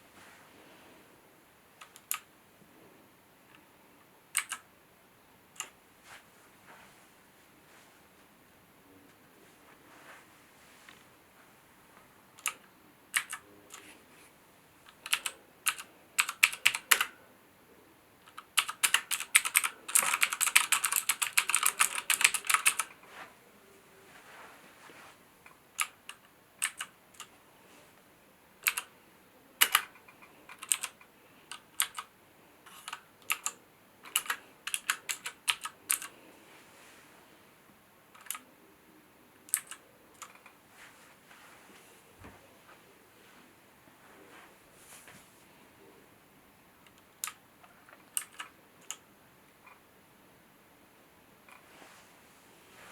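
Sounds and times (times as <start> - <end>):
mechanical keyboard typing: 1.8 - 2.3, 4.3 - 4.7, 12.4 - 13.8, 14.9 - 17.1, 18.2 - 23.0, 25.7 - 27.3, 28.6 - 28.9, 29.6 - 32.1, 32.7 - 36.1, 38.2 - 38.4, 39.5 - 40.6, 46.9 - 49.0.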